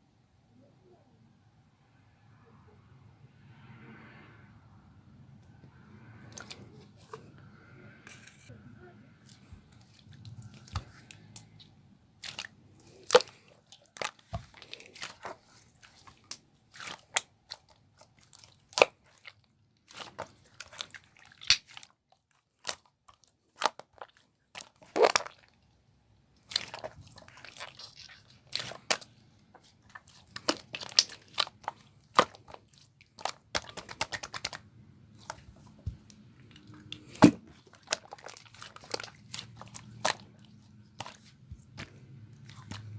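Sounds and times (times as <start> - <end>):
slime clicking and popping: 19.9 - 21.8, 29.9 - 34.6.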